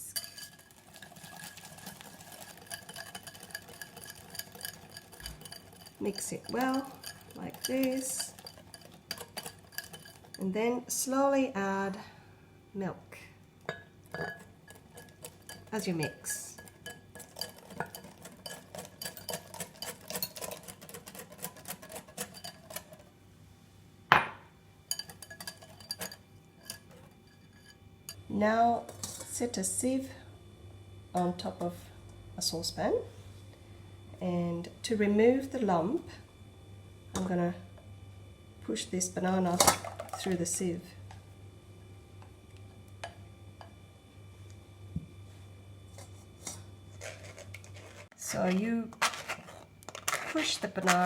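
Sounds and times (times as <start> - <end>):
wire whisk mixing batter: 0.0 - 11.2, 13.7 - 23.1, 24.9 - 27.7, 46.0 - 51.0.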